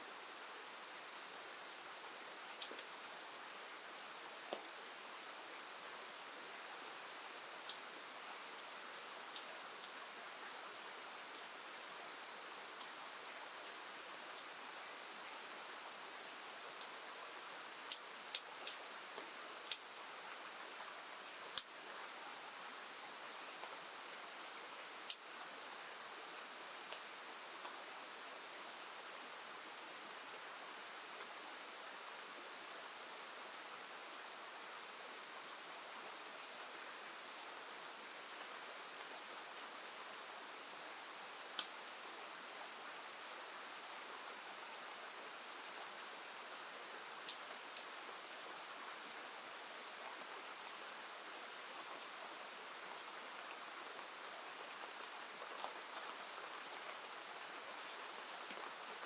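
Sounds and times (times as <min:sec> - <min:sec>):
flowing river water: 0:00.0 - 0:59.0
rain: 0:00.0 - 0:59.0.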